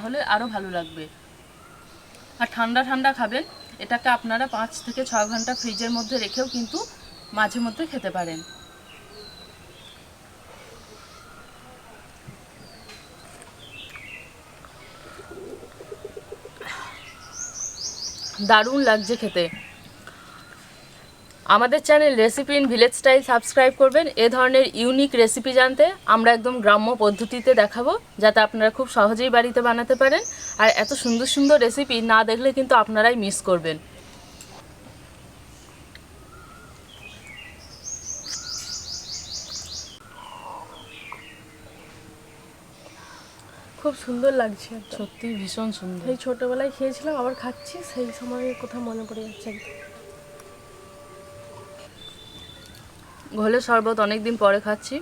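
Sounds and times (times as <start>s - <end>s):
low evenly spaced bird notes: 0.0s - 55.0s
high bird chirps: 36.3s - 43.5s, 46.2s - 53.2s.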